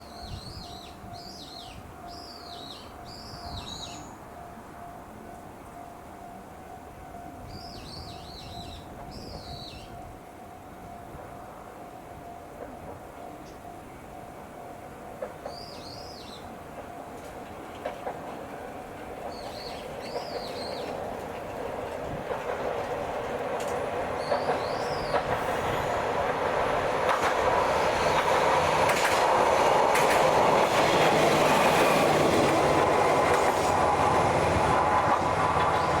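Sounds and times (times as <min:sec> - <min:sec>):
train wheels clicking on rail joints: 0:12.4 - 0:13.8, 0:15.0 - 0:36.0
birds chirping: 0:19.2 - 0:21.2, 0:24.1 - 0:25.7.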